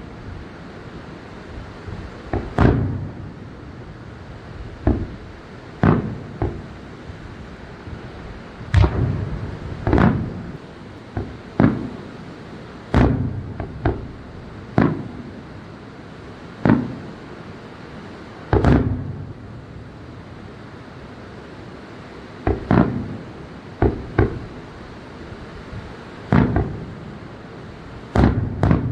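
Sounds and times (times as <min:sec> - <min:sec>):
fireworks booms with rumbling echo: 0:01.5 - 0:15.8, 0:16.5 - 0:17.6, 0:18.3 - 0:20.7, 0:22.4 - 0:28.9.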